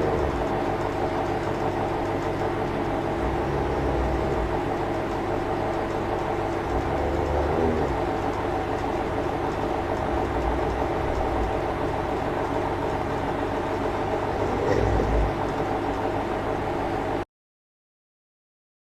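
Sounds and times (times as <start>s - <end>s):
monkey snoring: 0.0s - 0.7s, 2.9s - 5.4s, 6.3s - 12.3s, 13.0s - 15.8s
steady hum: 0.0s - 17.2s.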